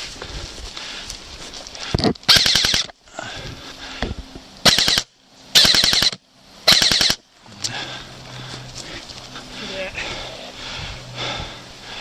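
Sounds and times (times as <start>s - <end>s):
airsoft gun firing bursts: 2.3s - 2.9s, 4.6s - 7.2s.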